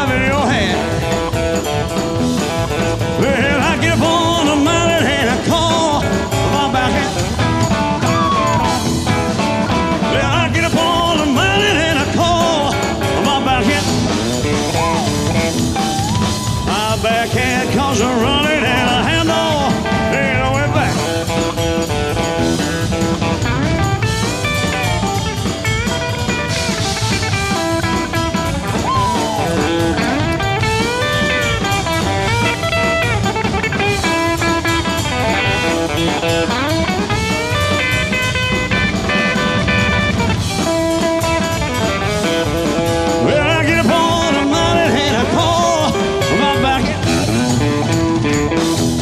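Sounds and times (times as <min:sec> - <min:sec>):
bass: 0:00.0 - 0:49.0
drums: 0:00.0 - 0:49.0
keyboards: 0:00.0 - 0:49.0
lead electric guitar: 0:00.0 - 0:49.0.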